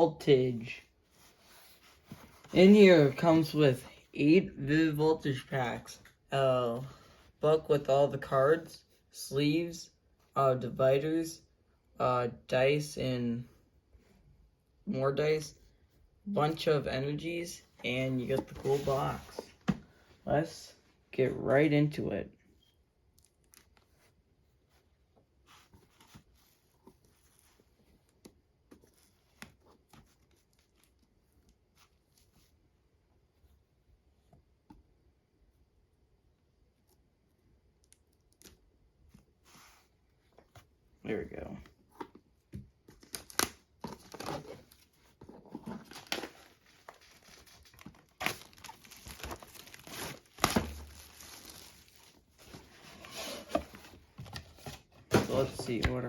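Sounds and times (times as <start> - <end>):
shrink wrap crinkling and tearing: 43.0 - 44.7, 45.9 - 52.2
packaging rustling: 43.0 - 55.7.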